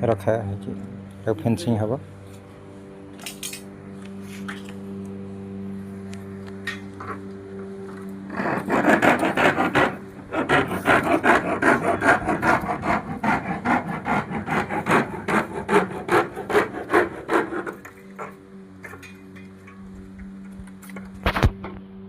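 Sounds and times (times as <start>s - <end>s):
hand tool strokes on material: 8.3s - 18.4s.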